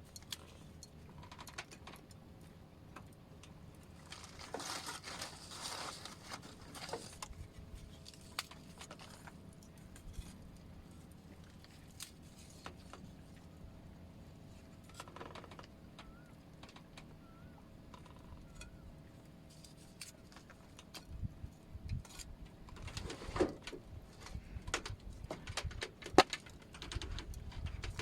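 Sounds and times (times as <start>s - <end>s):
clicks and knocks of handling: 0.1s - 13.2s, 14.9s - 17.1s, 21.8s - 28.0s
faint bird chirps: 15.9s - 16.4s, 17.1s - 19.0s.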